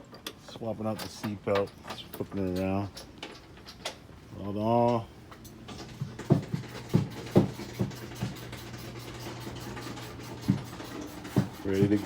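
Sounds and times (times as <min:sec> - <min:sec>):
sharp knocks and clicks: 0:05.7 - 0:08.5.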